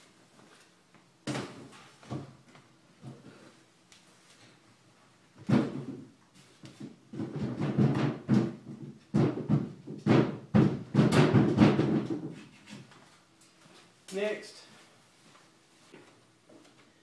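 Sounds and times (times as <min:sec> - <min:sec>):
wooden furniture knocking and thumping: 0:01.2 - 0:03.2, 0:05.4 - 0:12.9.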